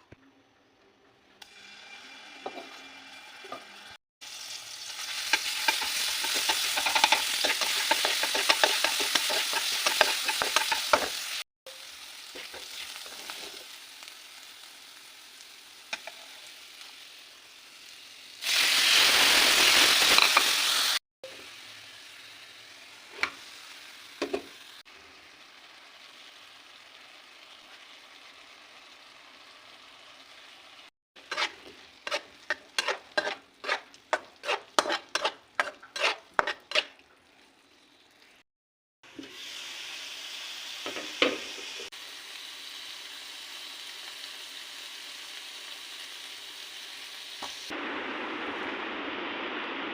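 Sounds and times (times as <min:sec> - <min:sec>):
food sizzling in a pan: 0:01.4 - 0:38.4, 0:39.0 - 0:49.9
utensil scraping a pan: 0:05.3 - 0:11.3, 0:31.2 - 0:37.0.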